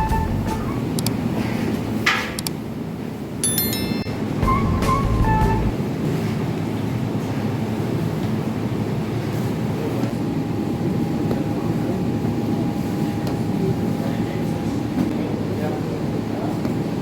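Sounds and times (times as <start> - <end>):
bakery machinery rumbling: 0.0 - 1.9.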